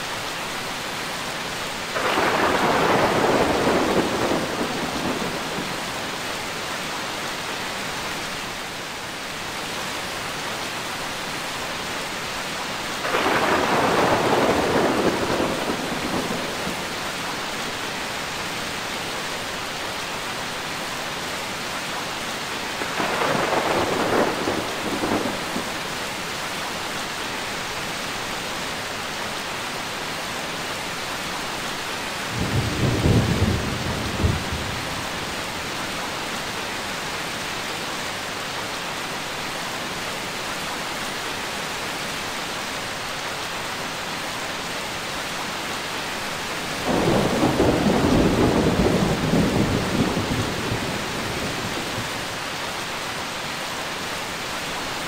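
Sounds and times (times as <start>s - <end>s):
steady rain: 0.0s - 55.0s
thunder rolling: 2.0s - 6.0s, 13.0s - 16.9s, 22.8s - 25.8s, 46.8s - 52.0s.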